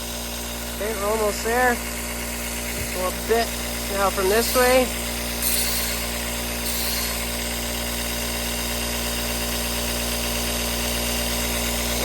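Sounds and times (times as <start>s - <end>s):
electric grinder motor hum: 0.0s - 12.0s
knife blade grinding: 4.0s - 7.6s.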